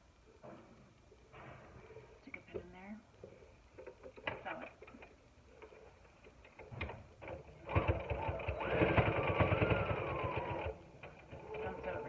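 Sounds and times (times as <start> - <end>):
sewing machine stitching: 6.5 - 12.0.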